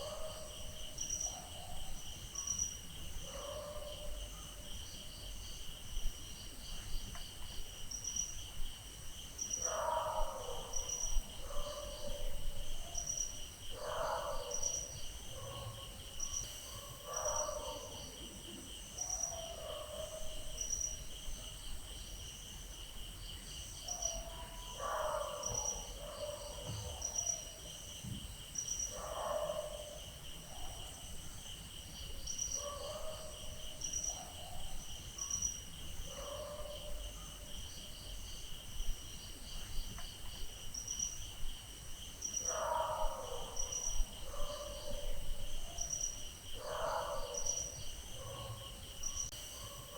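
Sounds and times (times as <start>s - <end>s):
dog barking: 0.0s - 0.5s, 3.3s - 4.6s, 9.6s - 13.1s, 13.7s - 18.2s, 19.0s - 20.6s, 23.9s - 27.5s, 28.9s - 30.9s, 32.6s - 35.4s, 36.0s - 37.5s, 42.4s - 46.0s, 46.6s - 49.9s
crickets chirping: 0.0s - 49.9s.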